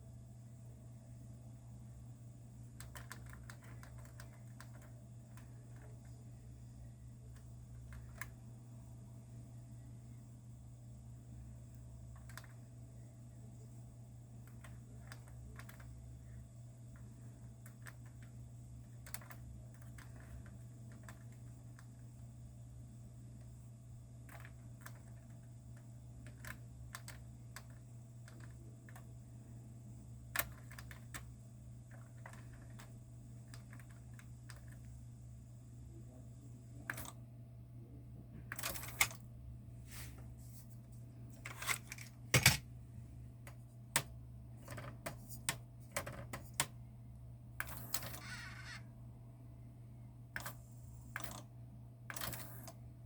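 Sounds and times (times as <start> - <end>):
faint high whine: 0.0 - 18.9
steady low hum: 0.0 - 53.0.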